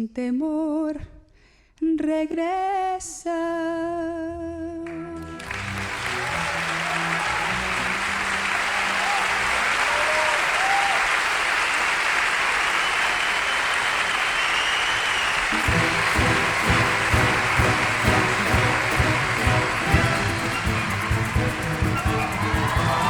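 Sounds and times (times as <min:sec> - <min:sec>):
audience applauding and cheering: 0:05.2 - 0:23.0
low accompaniment notes: 0:15.6 - 0:23.0.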